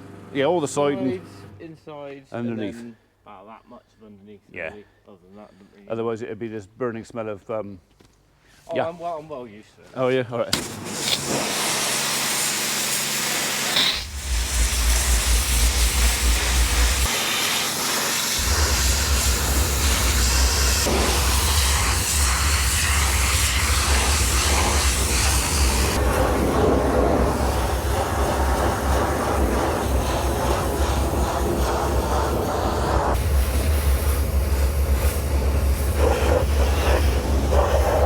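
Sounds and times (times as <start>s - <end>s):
pressure washer water jet hissing: 10.6s - 38.0s
pump humming: 12.7s - 17.1s, 18.3s - 31.7s.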